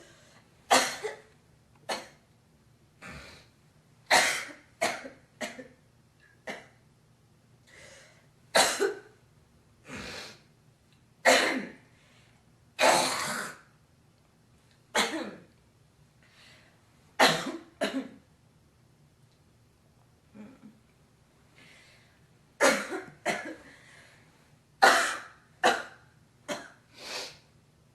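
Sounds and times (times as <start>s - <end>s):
woman coughing: 0.7s - 1.3s, 4.1s - 5.8s, 8.6s - 9.1s, 11.3s - 11.8s, 15.0s - 15.5s, 17.2s - 18.2s, 22.6s - 23.6s, 24.8s - 26.8s.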